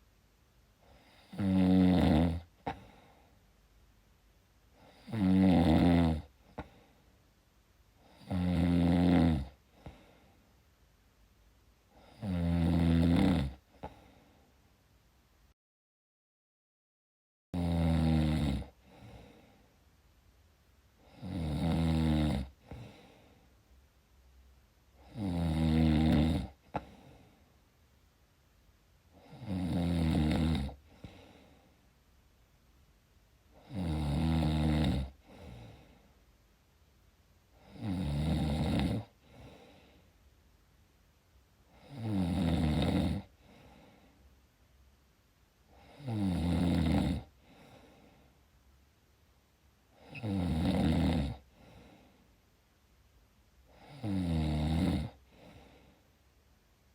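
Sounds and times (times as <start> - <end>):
person snoring: 0.9 - 3.0, 4.8 - 6.8, 8.0 - 10.1, 12.0 - 14.1, 17.6 - 19.4, 21.0 - 23.2, 25.0 - 27.1, 29.2 - 31.5, 33.6 - 36.0, 37.6 - 39.9, 41.7 - 43.8, 45.7 - 48.0, 50.0 - 52.0, 53.7 - 55.9.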